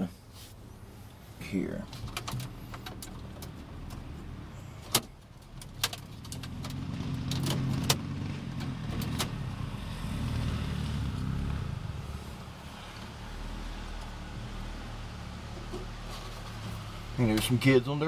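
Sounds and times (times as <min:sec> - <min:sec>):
distant dirt bike engines: 0:06.0 - 0:18.0.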